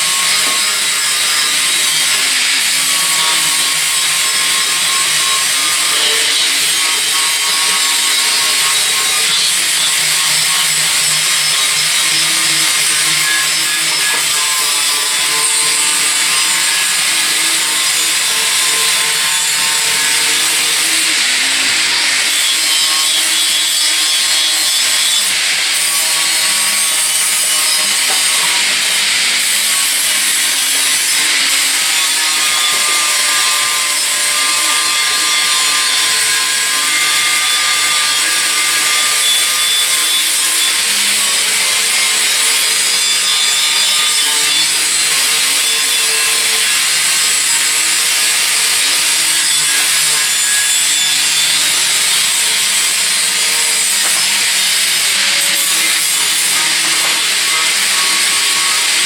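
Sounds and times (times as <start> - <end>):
power tool grinding metal: 0.0 - 59.0.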